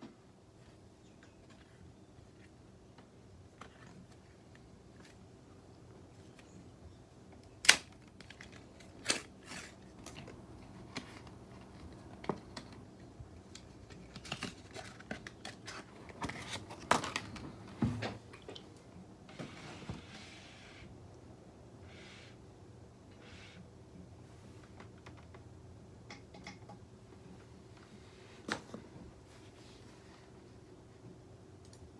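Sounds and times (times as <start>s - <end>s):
packaging rustle: 13.5s - 17.7s.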